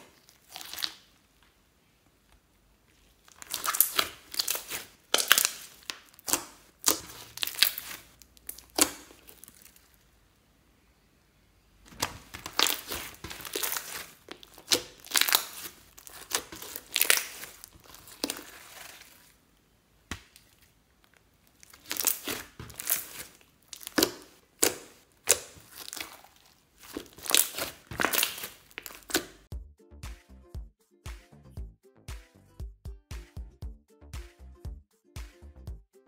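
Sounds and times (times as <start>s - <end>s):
slime being kneaded: 0.0s - 1.2s, 2.9s - 10.0s, 11.8s - 19.4s, 20.0s - 29.5s.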